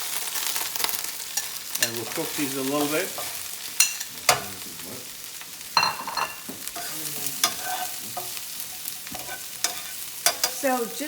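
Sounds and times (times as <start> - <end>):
vegetables sizzling in oil: 0.0 - 11.0
utensil scraping a pan: 0.7 - 4.6, 5.8 - 10.8.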